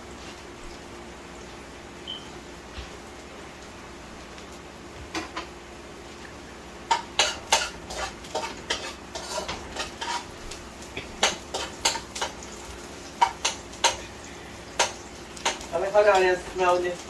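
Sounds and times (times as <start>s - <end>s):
metal utensils clinking on dishes: 6.9s - 12.5s, 13.2s - 14.1s, 14.8s - 17.0s.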